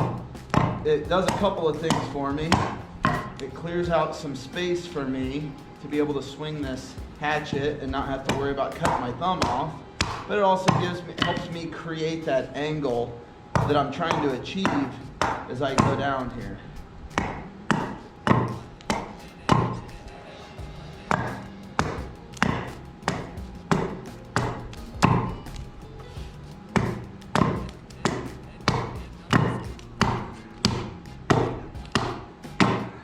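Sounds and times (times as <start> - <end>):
hatchet chopping wood: 0.0 - 3.5, 7.0 - 11.6, 13.6 - 16.1, 17.2 - 19.9, 21.1 - 25.6, 26.7 - 33.0.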